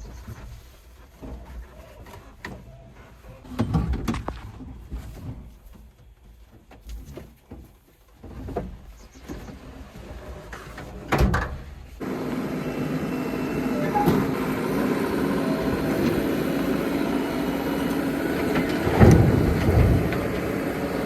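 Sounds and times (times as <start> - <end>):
backhoe clunks and knocks: 3.4 - 9.6, 10.8 - 21.0
low engine rumble: 12.0 - 21.0.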